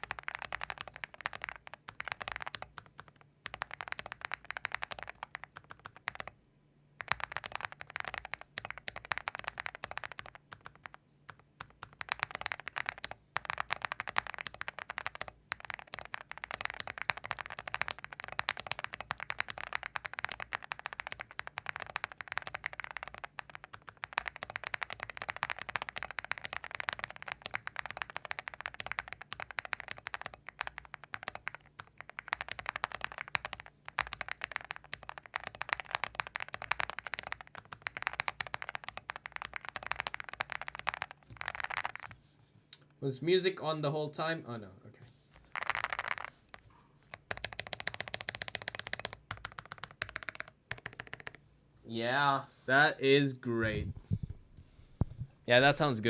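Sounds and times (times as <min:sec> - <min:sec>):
mechanical keyboard typing: 0:00.0 - 0:06.4, 0:07.0 - 0:42.2, 0:45.4 - 0:51.4.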